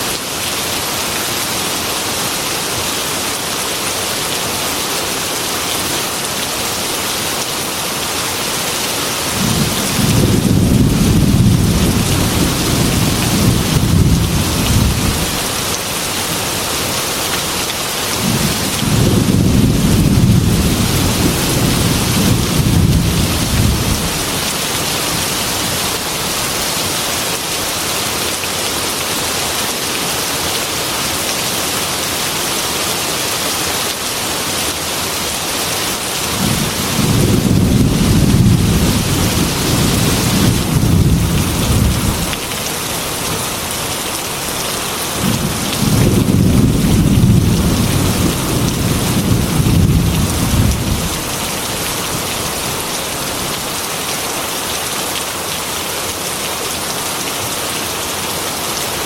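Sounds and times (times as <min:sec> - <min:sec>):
heavy rain on a window: 0:00.0 - 0:59.0
thunder rumbling: 0:09.4 - 0:15.4, 0:18.2 - 0:24.4, 0:36.4 - 0:42.4, 0:45.2 - 0:51.3.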